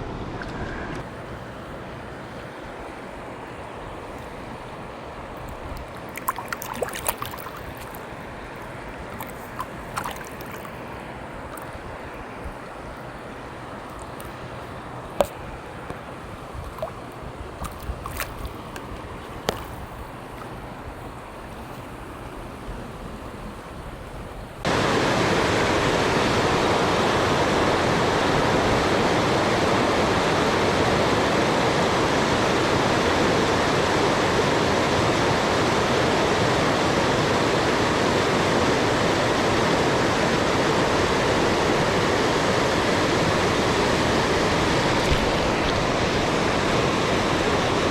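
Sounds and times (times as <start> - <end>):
river water rushing: 0.0 - 47.9.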